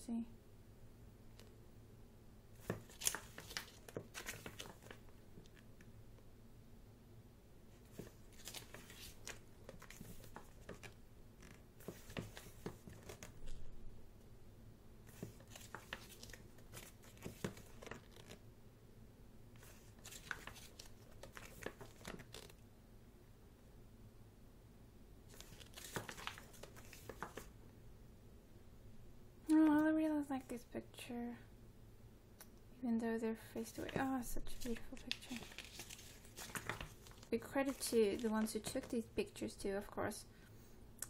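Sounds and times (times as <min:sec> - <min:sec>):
book pages turning: 0:02.6 - 0:05.7, 0:07.8 - 0:13.7, 0:15.1 - 0:18.4, 0:19.6 - 0:22.6, 0:25.3 - 0:27.5, 0:33.7 - 0:39.1.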